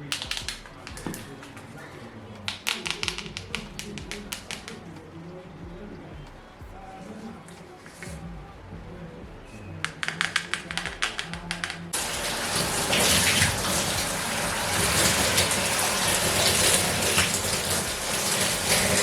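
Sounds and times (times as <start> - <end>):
sharp clicks: 0.0 - 1.7, 2.4 - 5.1, 9.8 - 12.0
water gushing from a tap: 12.0 - 19.0.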